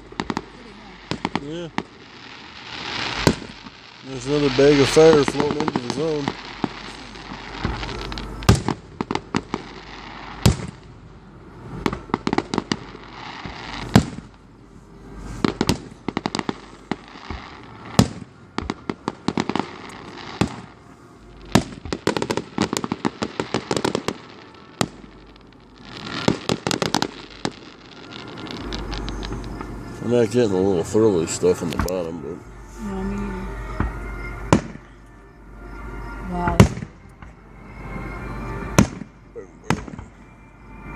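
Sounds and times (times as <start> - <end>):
rapid crackling firework pops: 0.0 - 10.9, 11.8 - 14.4, 15.4 - 20.7, 21.4 - 29.8
loud firework bangs: 0.0 - 32.0, 33.8 - 34.9, 36.4 - 37.4, 38.7 - 40.3.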